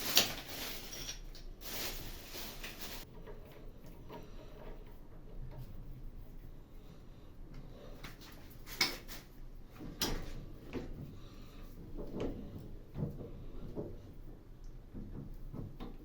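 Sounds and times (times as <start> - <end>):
hard objects knocking and clicking: 11.8 - 16.0.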